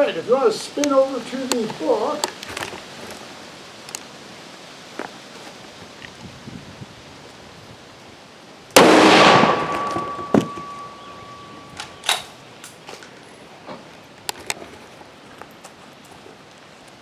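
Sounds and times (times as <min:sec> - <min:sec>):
steady high tone: 0:08.8 - 0:11.9
rifle shot: 0:08.8 - 0:12.3.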